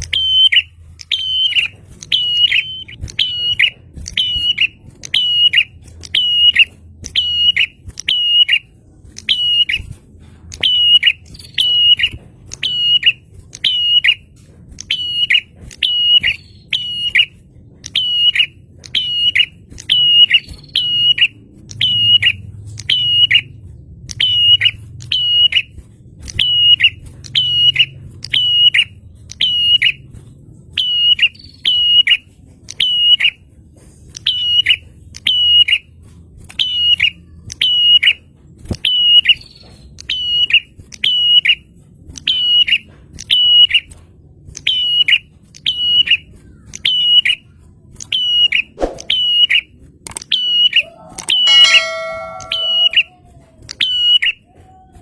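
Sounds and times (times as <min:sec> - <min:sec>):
bird calling sharp chips: 0:00.0 - 0:23.4.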